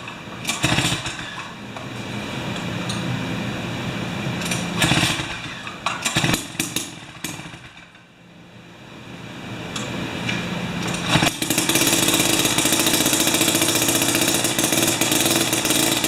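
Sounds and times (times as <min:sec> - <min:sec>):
ice auger engine running unevenly: 0:11.0 - 0:16.0.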